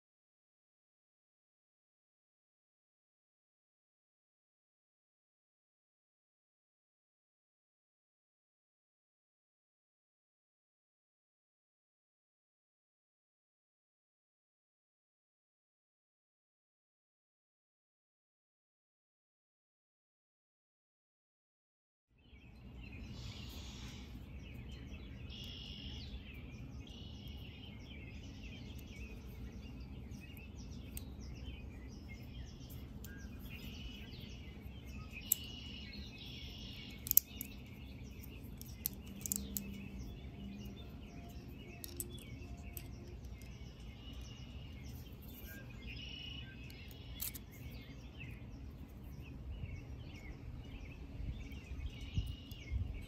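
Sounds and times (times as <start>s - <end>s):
small birds chirping: 22.1s - 53.0s
low outdoor rumble: 22.3s - 53.0s
sharp clicks: 36.8s - 44.3s, 46.6s - 47.6s.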